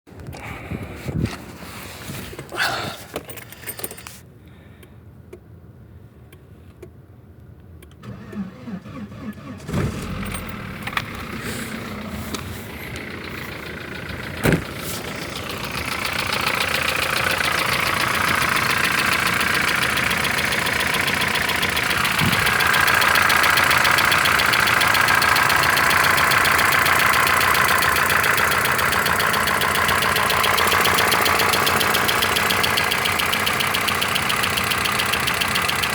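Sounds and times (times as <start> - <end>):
car engine starting: 7.6 - 35.9
engine idling with knocking: 9.9 - 35.9.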